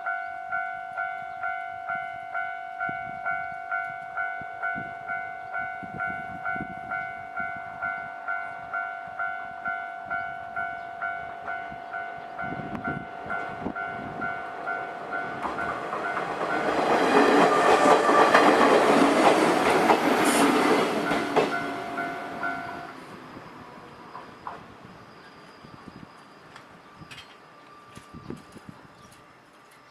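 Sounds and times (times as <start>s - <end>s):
level-crossing alarm ringing: 0.0s - 28.4s
train wheels clattering on rail joints: 14.7s - 22.9s, 24.0s - 24.7s, 26.5s - 29.9s.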